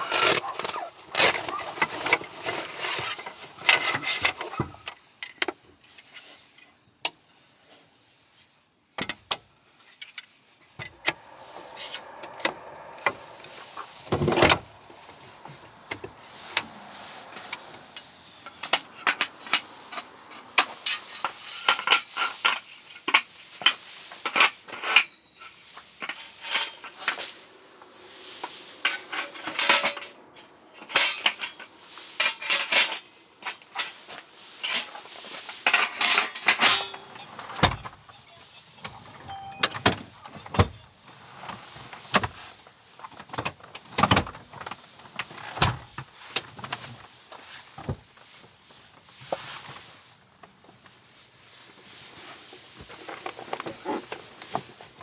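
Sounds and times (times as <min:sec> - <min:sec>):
scraping noise: 0:10.8 - 0:18.8.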